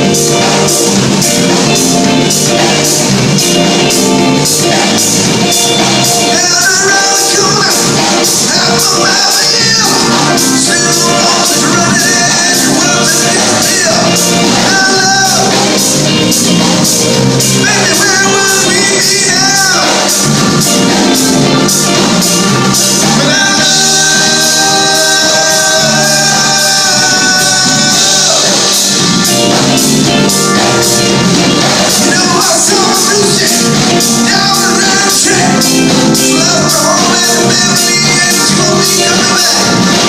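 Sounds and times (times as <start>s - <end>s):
drums: 0.0s - 40.0s
live rock band playing: 0.0s - 40.0s
person singing: 0.0s - 40.0s.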